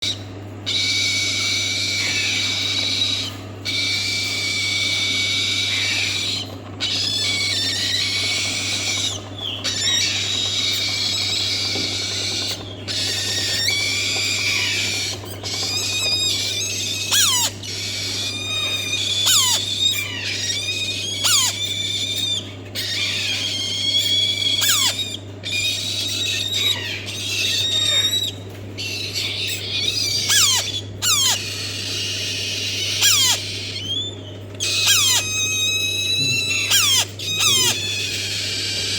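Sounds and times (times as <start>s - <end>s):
parrot calling: 0.0s - 38.9s
parrot squeals falling in pitch: 0.0s - 38.9s.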